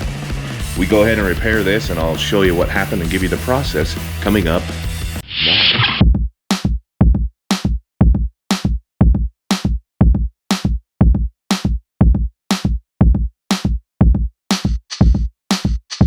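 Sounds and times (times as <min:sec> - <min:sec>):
drum machine beat: 0:00.0 - 0:05.2, 0:06.0 - 0:16.0.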